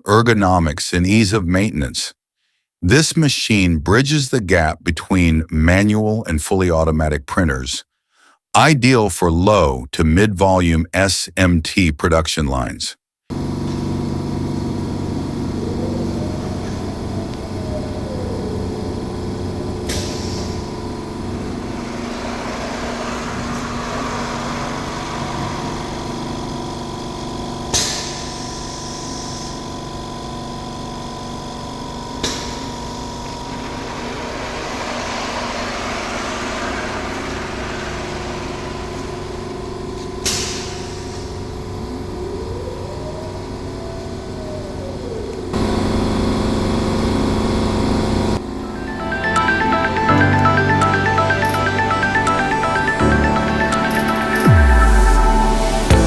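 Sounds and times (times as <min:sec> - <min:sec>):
machine motor hum: 0:13.3 - 0:56.0
mechanical wash: 0:13.3 - 0:56.0.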